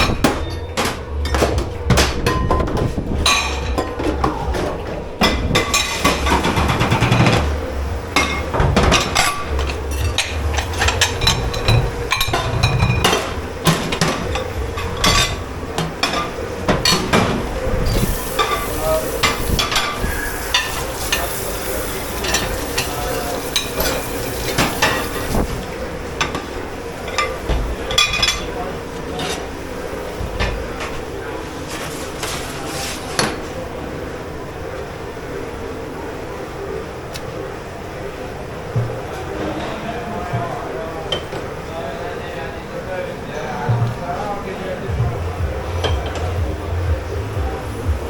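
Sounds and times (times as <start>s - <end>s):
plates pans and cutlery clattering: 0.0s - 33.6s
continuous hiss: 0.0s - 48.0s
steady hum: 0.0s - 48.0s.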